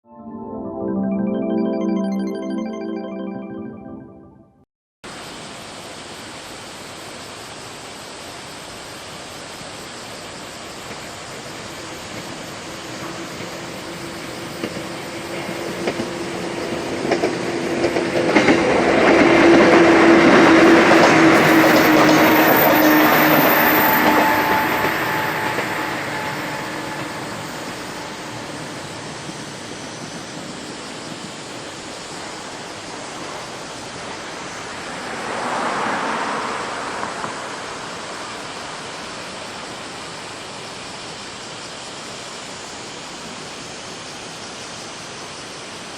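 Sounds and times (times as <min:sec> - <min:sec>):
electric train passing: 0:11.2 - 0:39.7.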